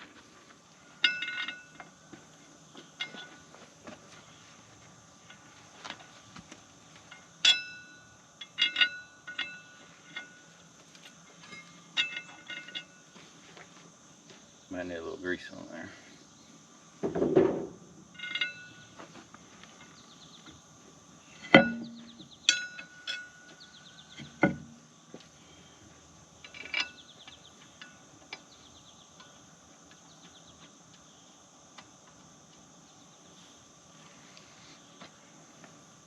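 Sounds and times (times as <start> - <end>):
insects chirping: 0.0 - 36.0
metal tools clanking: 0.9 - 2.0, 3.0 - 3.5, 7.0 - 13.2, 18.1 - 19.2, 21.3 - 24.8, 26.4 - 28.4.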